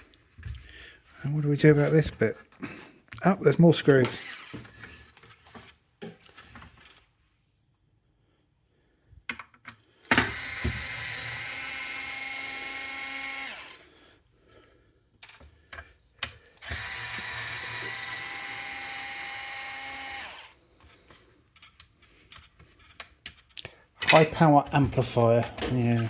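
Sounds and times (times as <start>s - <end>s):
electric screwdriver whining: 4.0s - 5.0s, 10.1s - 13.9s, 16.6s - 20.6s.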